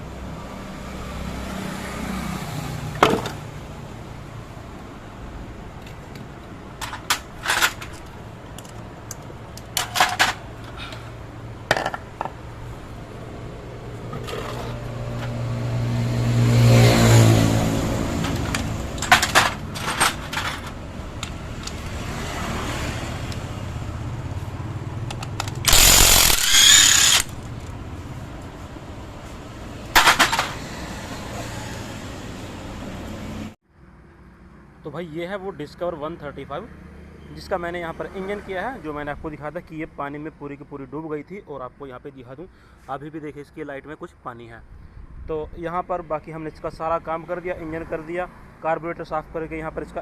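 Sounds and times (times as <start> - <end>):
motor humming: 25.7 - 27.7.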